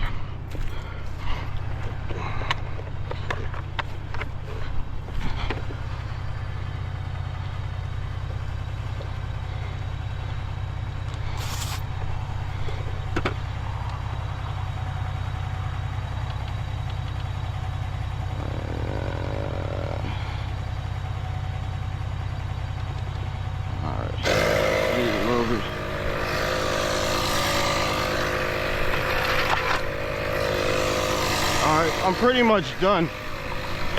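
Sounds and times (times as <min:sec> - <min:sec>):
short hiss: 0:11.3 - 0:11.9
motor humming: 0:24.2 - 0:33.9.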